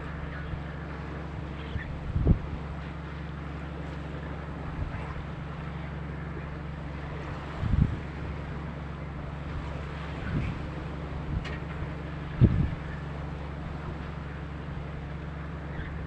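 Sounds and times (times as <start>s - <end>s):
wind noise on microphone: 0.0s - 2.8s, 4.6s - 5.6s, 7.3s - 14.2s
boat engine droning: 0.0s - 16.0s.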